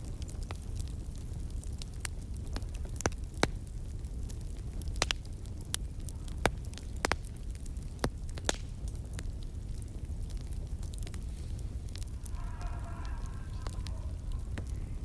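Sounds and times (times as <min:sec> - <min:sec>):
wood fire crackling: 0:00.0 - 0:15.0
low rumble: 0:11.3 - 0:15.0.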